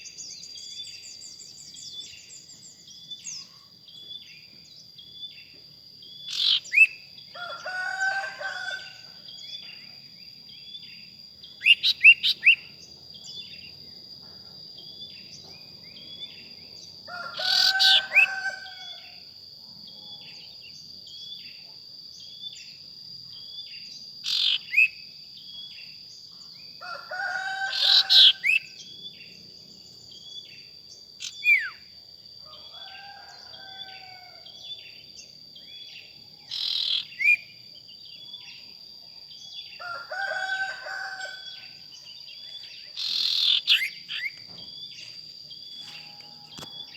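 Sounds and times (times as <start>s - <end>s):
insects buzzing: 0.0s - 46.9s
birds chirping: 39.8s - 46.9s.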